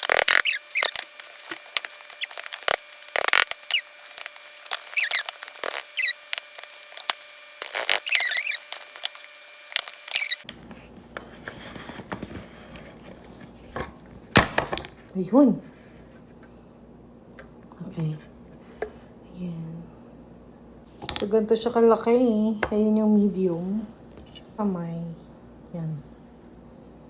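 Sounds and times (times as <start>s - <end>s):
high warbling squeaks: 0.0s - 10.4s.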